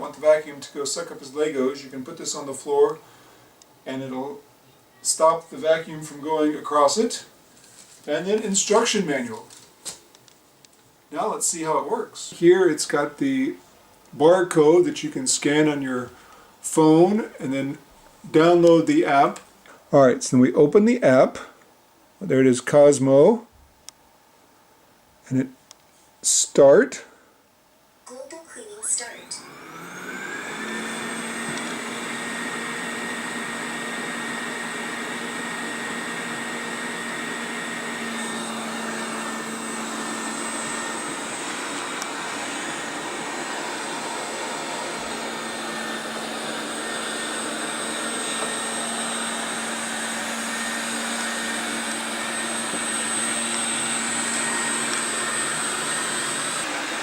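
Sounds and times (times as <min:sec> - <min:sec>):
constant hiss: 0:00.0 - 0:29.2
robot vacuum motor whining: 0:28.6 - 0:57.0.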